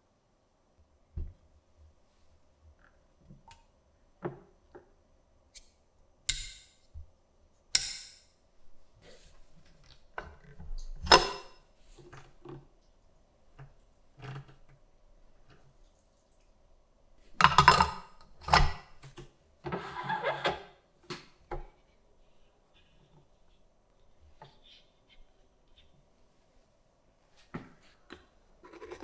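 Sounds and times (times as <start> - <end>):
clicks knocks and clinks: 11.1 - 11.5.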